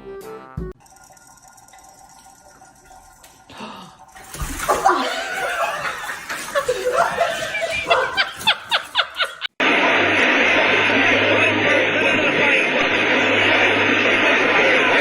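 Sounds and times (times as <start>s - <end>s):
person laughing hard: 4.7s - 9.5s.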